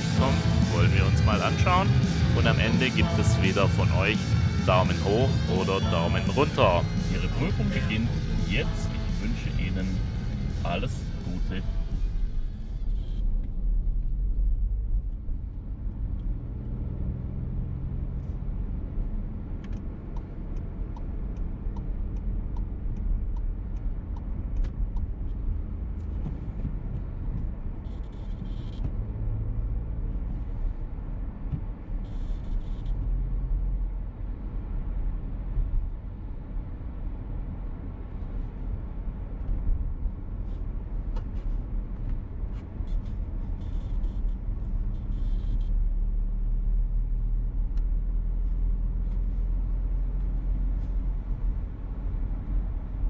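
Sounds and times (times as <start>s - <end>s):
car engine and road rumble: 0.0s - 53.0s
faint regular ticks: 27.8s - 28.8s, 42.9s - 45.8s.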